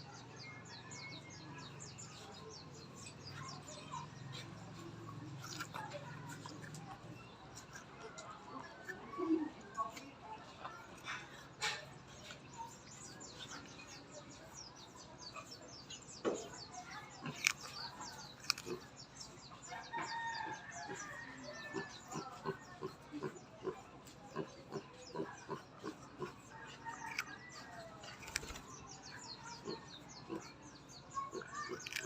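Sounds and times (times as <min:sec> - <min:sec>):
tortoise chewing melon: 0:14.6 - 0:32.0.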